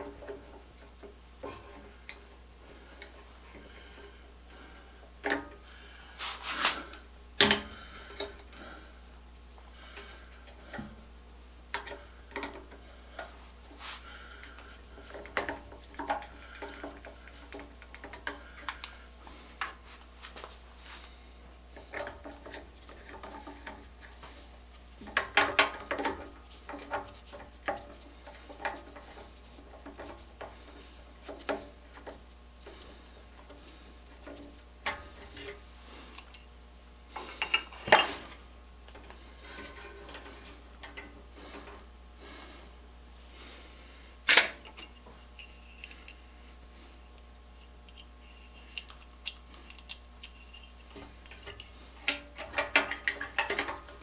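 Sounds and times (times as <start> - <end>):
metal tools clinking on workbench: 37.2 - 38.2.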